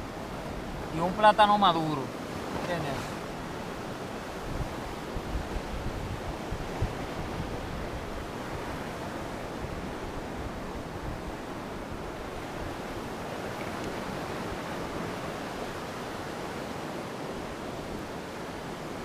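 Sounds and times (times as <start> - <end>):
sea surf: 0.0 - 19.0
wind: 0.0 - 19.0
wind buffeting microphone: 3.2 - 19.0.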